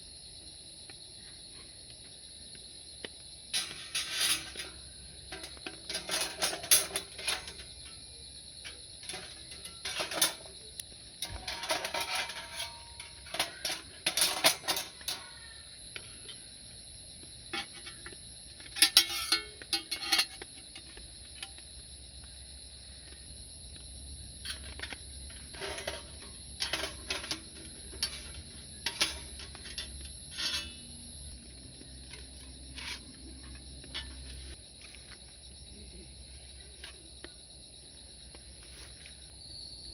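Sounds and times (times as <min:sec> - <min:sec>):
insects chirring: 0:00.0 - 0:39.9
metallic gear clinking: 0:11.2 - 0:15.3.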